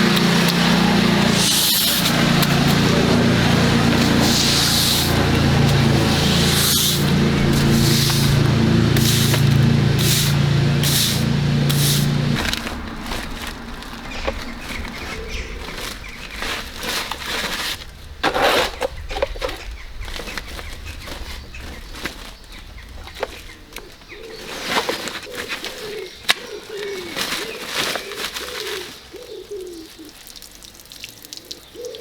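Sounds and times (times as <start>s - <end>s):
hissing pulses: 0.0s - 14.0s
machine hum: 0.0s - 24.2s
knocks and rustles: 0.0s - 29.0s.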